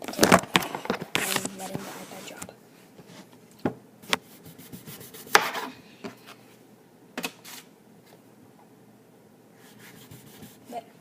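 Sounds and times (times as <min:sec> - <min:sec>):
knife chopping potato: 0:04.7 - 0:05.7.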